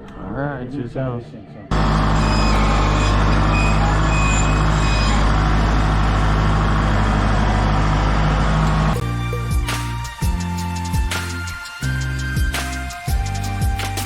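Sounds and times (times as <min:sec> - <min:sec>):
heavy engine running: 0:01.7 - 0:10.3
short high tones: 0:02.1 - 0:05.3.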